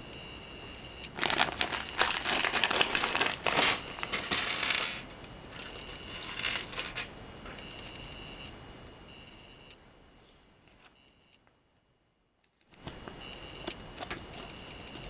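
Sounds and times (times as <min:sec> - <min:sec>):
plastic bag crinkling: 0:01.2 - 0:05.0
plastic pieces clattering: 0:01.2 - 0:07.1.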